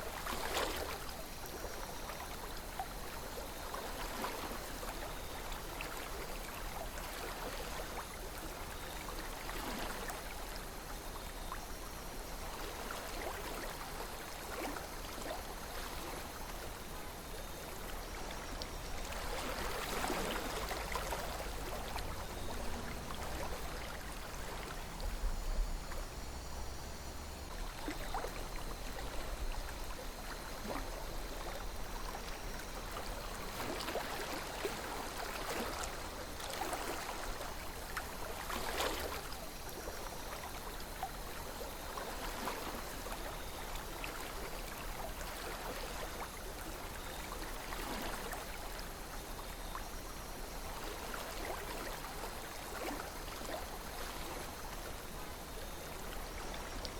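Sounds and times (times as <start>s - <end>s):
water gurgles and splashes: 0.0s - 56.9s
river flowing: 11.8s - 49.4s.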